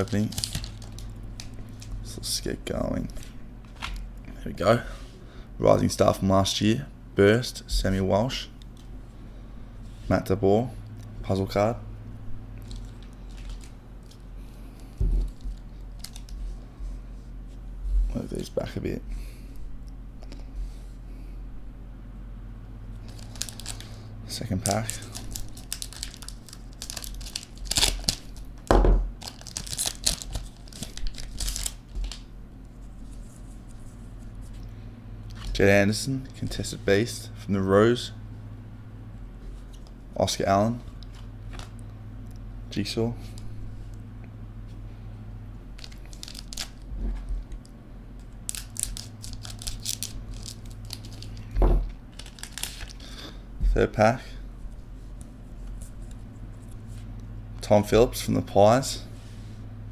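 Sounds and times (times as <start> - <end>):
card pack wrapper crinkling: 0.0 - 2.0, 12.6 - 14.3, 15.2 - 16.4, 23.0 - 32.2, 45.8 - 46.9, 48.4 - 53.2
steady low hum: 0.0 - 59.9.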